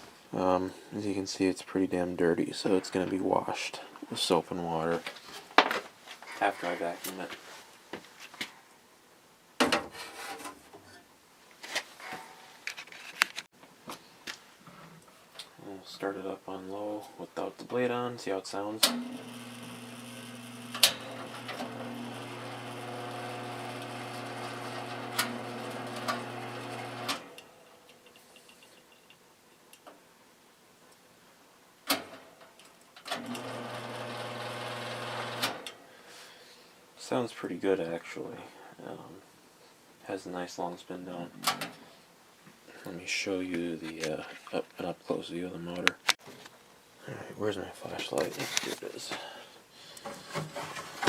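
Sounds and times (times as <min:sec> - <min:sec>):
fan motor humming: 0:18.8 - 0:27.5, 0:33.2 - 0:35.6.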